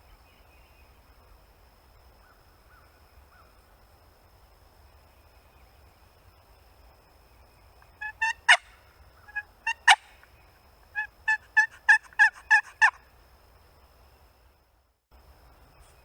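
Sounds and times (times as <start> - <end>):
turkey yelps: 8.0 - 10.2, 11.0 - 13.0.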